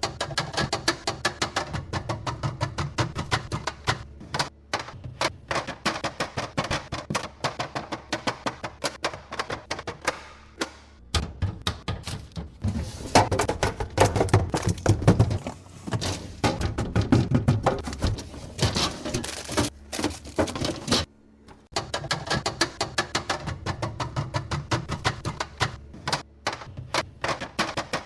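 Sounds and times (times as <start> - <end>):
plastic containers clicking and knocking: 0.0 - 21.0.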